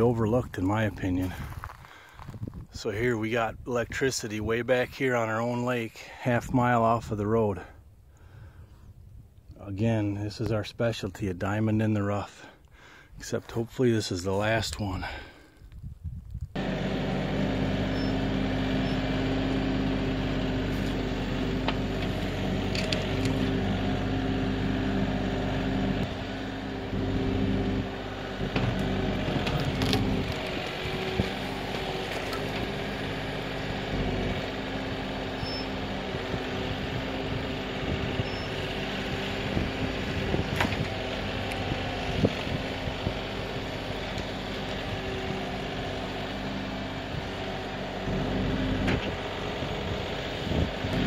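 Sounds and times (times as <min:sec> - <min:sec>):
tractor diesel engine running: 0:16.6 - 0:51.0.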